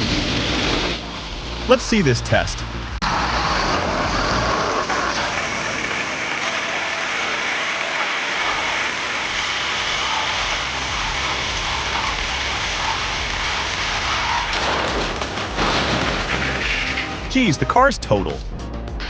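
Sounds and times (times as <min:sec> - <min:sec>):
shredder grinding metal: 0:03.0 - 0:17.3
low rumble: 0:08.4 - 0:17.4.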